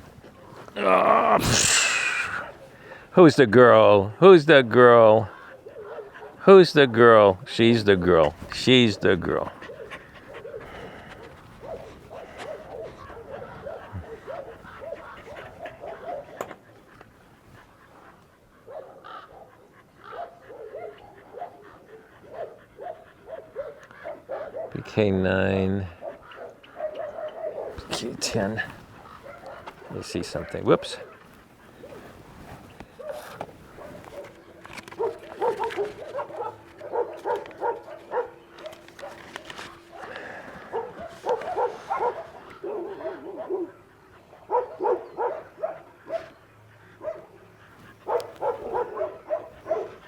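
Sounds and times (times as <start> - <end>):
dog barking: 5.4 - 6.5, 9.3 - 16.7, 18.0 - 24.8, 25.8 - 50.0.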